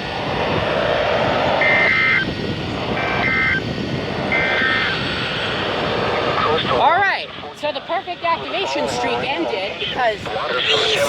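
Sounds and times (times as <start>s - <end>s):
steady background noise: 0.0s - 11.0s
digital data tone bursts: 4.3s - 4.9s, 10.6s - 11.0s.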